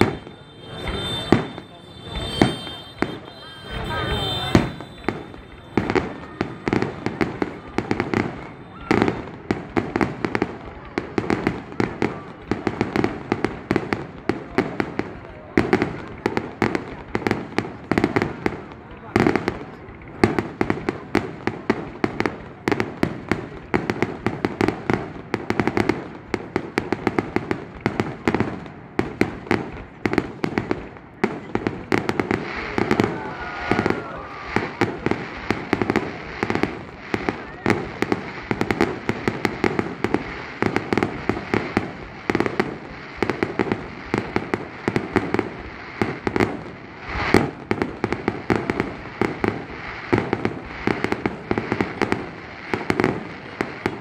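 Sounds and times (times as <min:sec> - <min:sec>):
fireworks cracks and bangs: 0:00.0 - 0:54.0
people's voices: 0:00.0 - 0:54.0.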